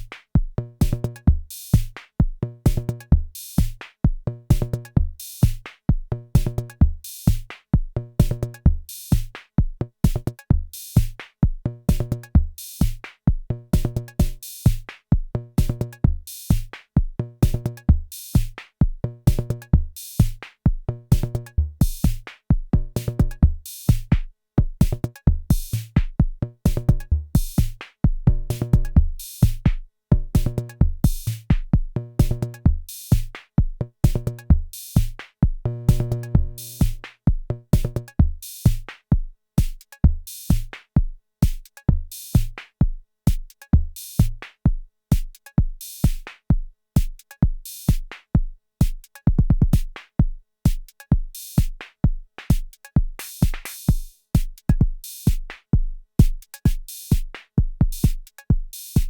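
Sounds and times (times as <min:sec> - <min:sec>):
drum machine beat: 0:00.0 - 0:11.2, 0:11.9 - 0:13.1, 0:13.8 - 0:14.9, 0:15.5 - 0:59.0.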